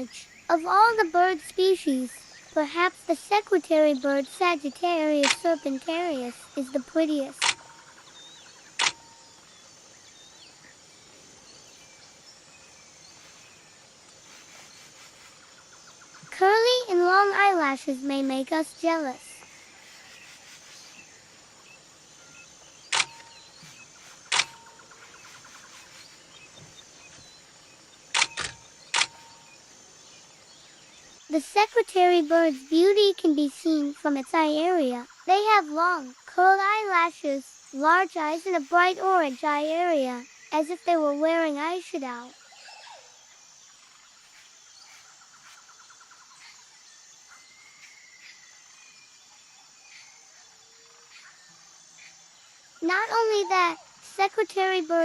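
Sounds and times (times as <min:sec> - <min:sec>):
bird calls: 0:00.0 - 0:32.8, 0:37.6 - 0:55.0
faint outdoor background: 0:00.0 - 0:55.0
high insect drone: 0:00.0 - 0:55.0
camera shutter clicks: 0:05.2 - 0:05.5, 0:07.4 - 0:07.6, 0:08.8 - 0:09.0, 0:22.9 - 0:23.4, 0:24.3 - 0:24.7, 0:28.2 - 0:29.3.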